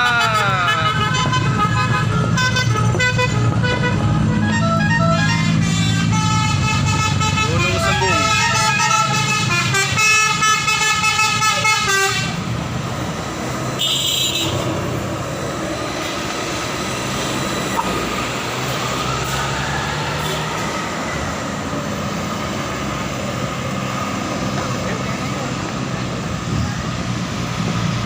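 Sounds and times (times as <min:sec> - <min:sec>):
bus musical horn playing a tune: 0:00.0 - 0:12.4, 0:13.8 - 0:14.7
bus engine: 0:00.0 - 0:28.0
road traffic: 0:00.0 - 0:28.0.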